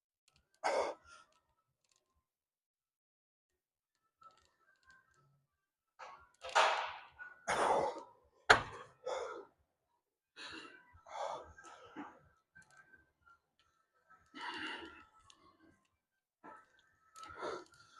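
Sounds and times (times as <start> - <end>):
man breathing heavily: 8.6 - 9.6.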